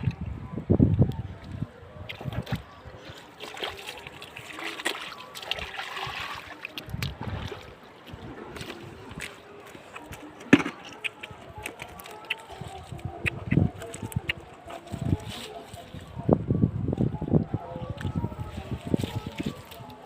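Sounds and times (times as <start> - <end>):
water splashing and sloshing: 1.4 - 13.1.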